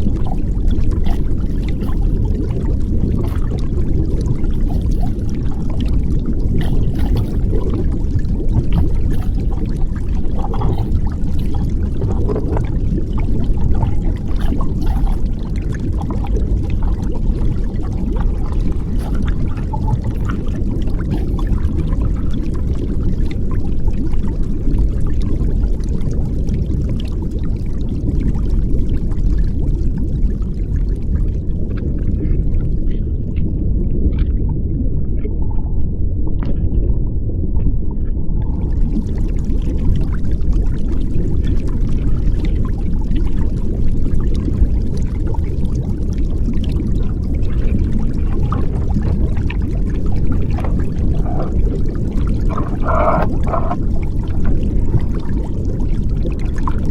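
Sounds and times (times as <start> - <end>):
muffled underwater rumble: 0.0 - 56.9.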